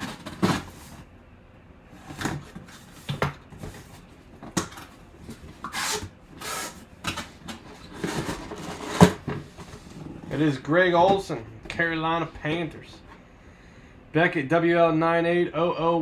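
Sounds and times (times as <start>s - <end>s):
packaging rustles: 0.0s - 1.1s, 2.0s - 11.8s
packaging knocks and clicks: 2.0s - 9.9s.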